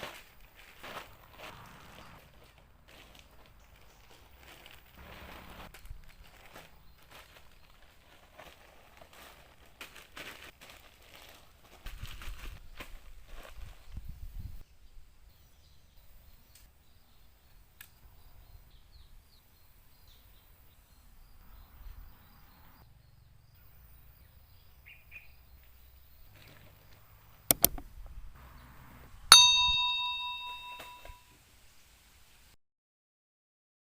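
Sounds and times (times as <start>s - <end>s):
sharp knocks: 27.5s - 27.8s
bright ringing ding: 29.3s - 31.2s.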